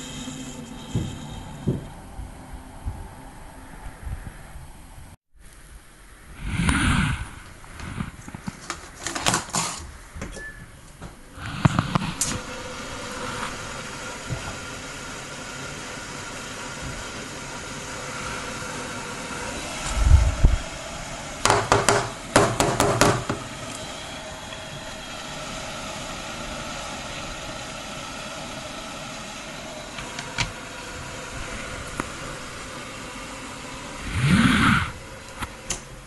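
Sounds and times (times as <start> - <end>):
low rumbling: 0.0 - 8.3, 19.3 - 21.5, 33.7 - 35.4
ventilation fan whirring: 0.0 - 36.0.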